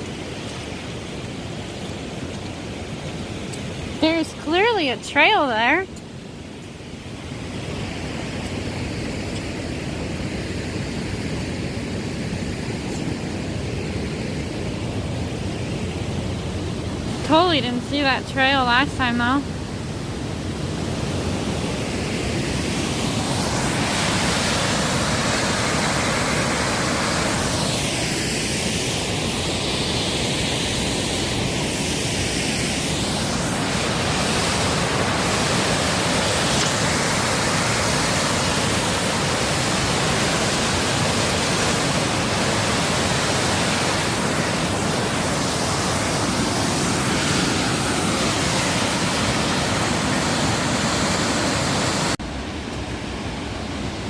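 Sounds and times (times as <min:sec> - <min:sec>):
waterfall rushing: 0:20.5 - 0:54.0.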